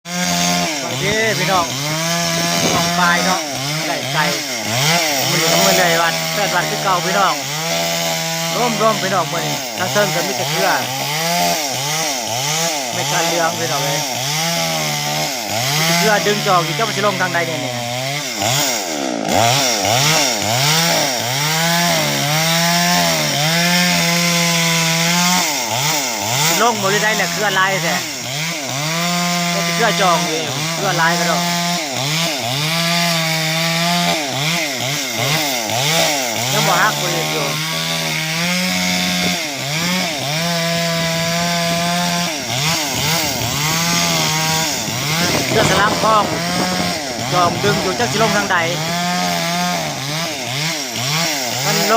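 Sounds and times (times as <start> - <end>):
chainsaw engine revving: 0.0 - 51.9.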